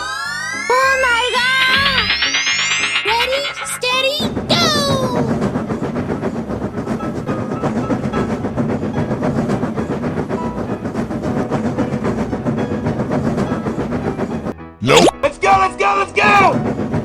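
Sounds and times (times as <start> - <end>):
train rumbling on track: 1.4 - 14.5, 15.4 - 17.0
wheels clattering over rails: 5.8 - 14.5, 16.4 - 17.0.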